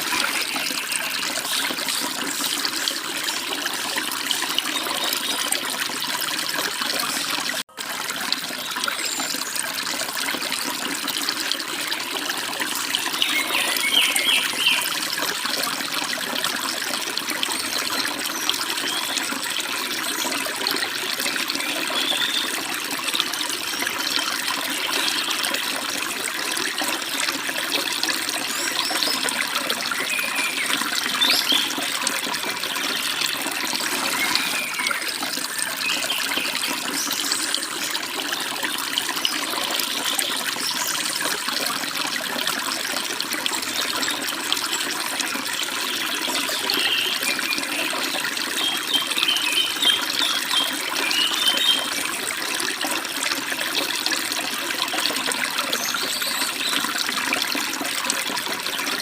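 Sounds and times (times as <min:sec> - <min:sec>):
birds chirping: 0:13.2 - 0:14.9.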